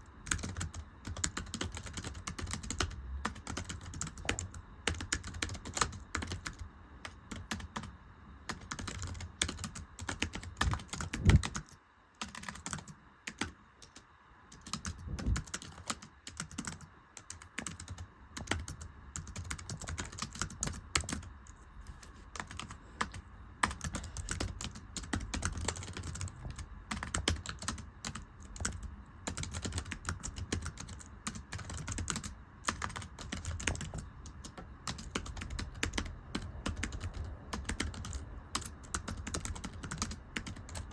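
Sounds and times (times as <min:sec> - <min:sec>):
fast typing on thin keyboard: 0:00.2 - 0:07.9, 0:08.5 - 0:21.3, 0:22.3 - 0:40.9.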